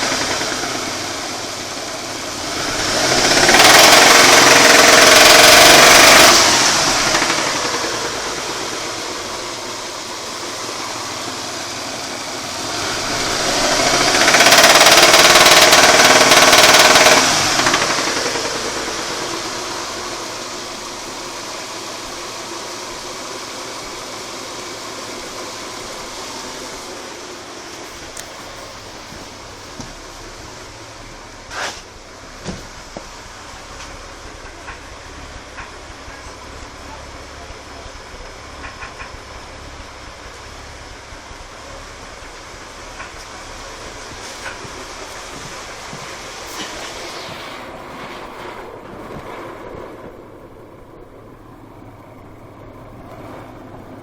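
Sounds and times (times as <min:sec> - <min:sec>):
knocking car engine revving: 0:00.0 - 0:54.0.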